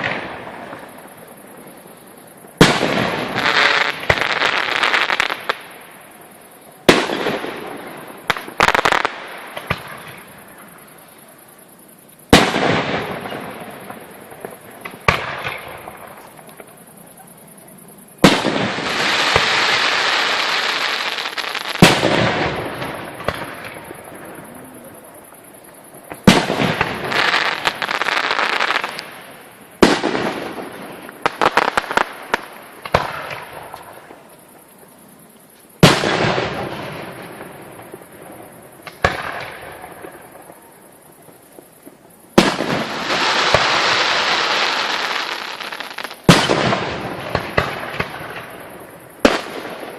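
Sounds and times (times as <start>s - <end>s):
fireworks bangs: 0.0s - 1.3s, 2.5s - 5.9s, 6.8s - 10.5s, 12.3s - 16.8s, 18.2s - 25.1s, 26.0s - 34.2s, 35.8s - 40.6s, 41.3s - 49.9s
fireworks crackling and fizzing: 2.4s - 10.8s, 18.0s - 34.6s, 35.8s - 49.9s.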